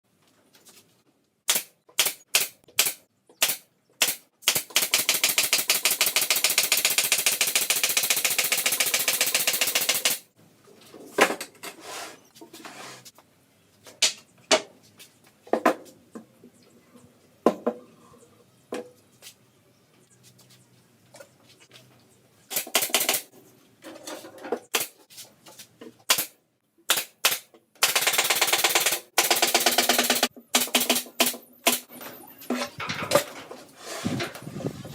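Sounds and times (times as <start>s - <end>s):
power tool sharp cracks: 1.5s - 10.2s, 26.1s - 31.9s
rapid hammering clicks: 1.5s - 10.3s, 22.5s - 23.3s, 26.9s - 31.9s.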